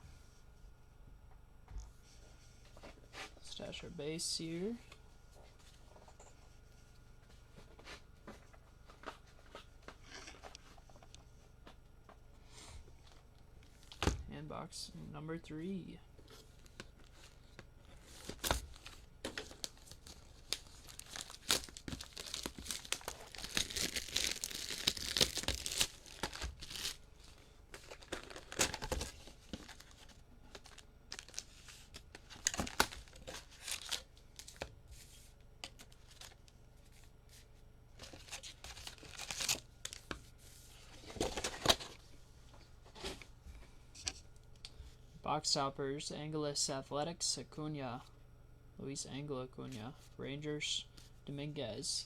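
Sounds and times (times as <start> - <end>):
plastic wrap tearing and crinkling: 16.6 - 34.6, 38.0 - 40.1.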